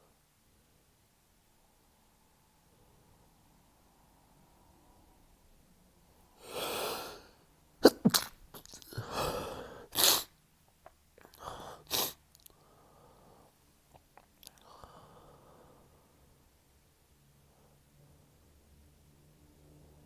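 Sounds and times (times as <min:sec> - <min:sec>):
noisy breath in: 0:06.3 - 0:07.5, 0:08.9 - 0:10.3, 0:11.4 - 0:13.6, 0:14.6 - 0:16.5
man sneezing stifled: 0:07.8 - 0:10.4, 0:11.9 - 0:12.2.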